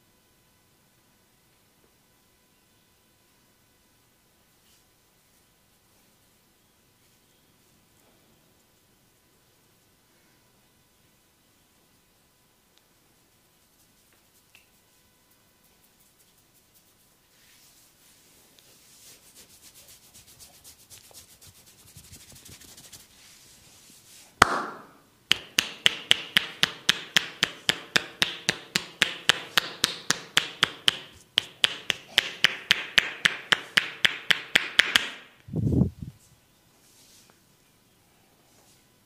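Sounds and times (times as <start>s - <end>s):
light patting and rubbing: 13.5s - 24.4s
hands slapping skin: 24.4s - 35.3s.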